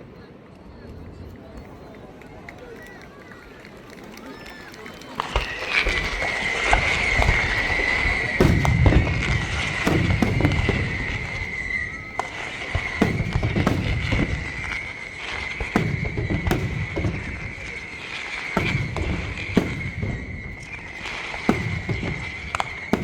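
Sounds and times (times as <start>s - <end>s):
firework crackling bursts: 4.3s - 23.0s
firework booms: 5.2s - 23.0s
high whistle: 5.2s - 23.0s.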